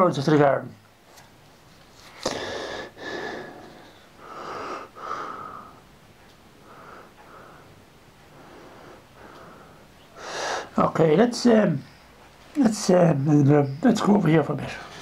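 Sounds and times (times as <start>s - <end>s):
person sniffing and wheezing: 2.1s - 5.8s, 8.4s - 10.7s
person breathing softly: 2.1s - 5.9s, 6.6s - 10.8s, 11.8s - 12.3s.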